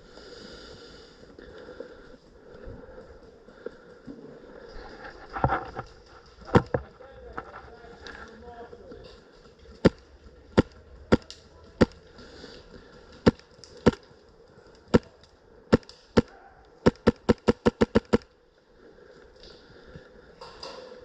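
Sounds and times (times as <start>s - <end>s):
airsoft gun shots: 15.7s - 18.2s.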